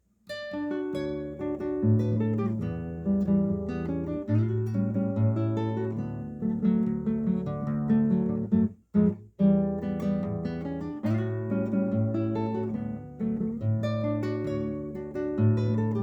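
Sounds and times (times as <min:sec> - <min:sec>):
acoustic guitar chords: 0:00.3 - 0:16.0.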